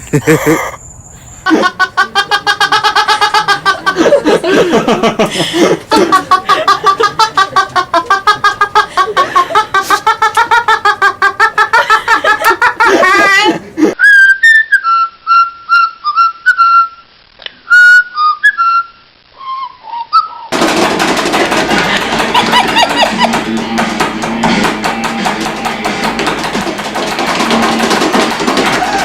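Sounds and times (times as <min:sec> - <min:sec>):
parrot whistling a tune: 0:14.0 - 0:17.0, 0:17.7 - 0:20.5.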